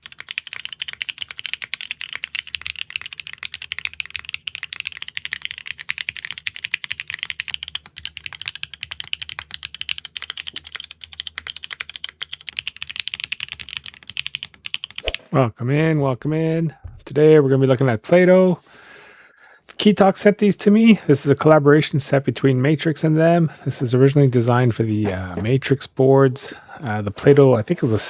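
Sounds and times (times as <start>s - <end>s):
fast typing on mechanical keyboard: 0.0s - 15.1s.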